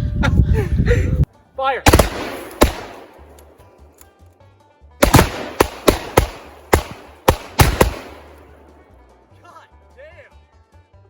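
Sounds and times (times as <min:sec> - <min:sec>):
faint background music: 0:00.0 - 0:11.0
gunshots: 0:01.8 - 0:03.8, 0:05.0 - 0:08.7.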